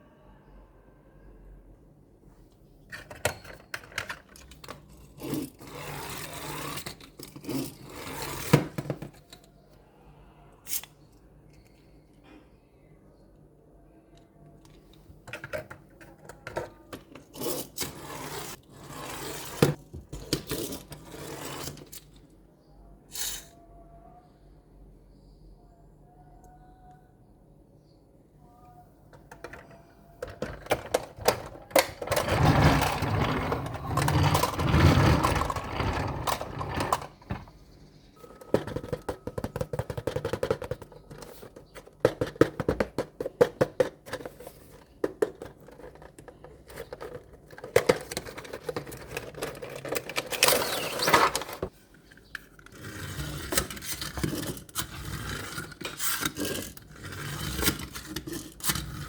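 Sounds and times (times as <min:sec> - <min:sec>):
toy trucks clicking and scraping: 0:02.9 - 0:09.5, 0:14.6 - 0:22.3, 0:23.1 - 0:23.6, 0:29.2 - 0:37.5, 0:38.2 - 0:59.0.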